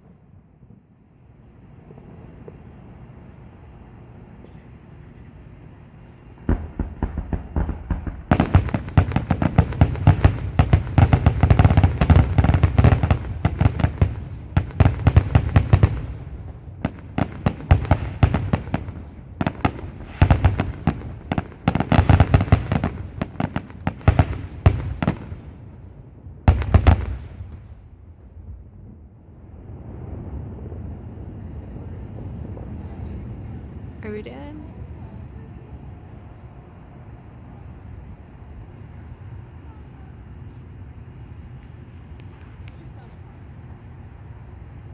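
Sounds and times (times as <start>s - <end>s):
aerial fireworks bangs: 6.4s - 25.6s, 26.4s - 28.6s.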